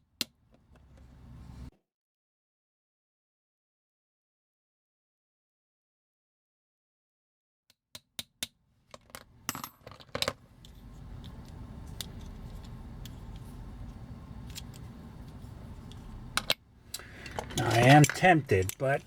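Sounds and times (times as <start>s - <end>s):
low steady hum: 9.1s - 19.0s.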